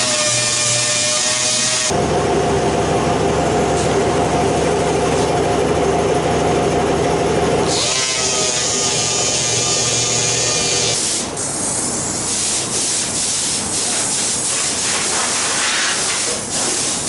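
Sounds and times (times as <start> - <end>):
power tool grinding metal: 0.0 - 2.0, 7.6 - 11.3.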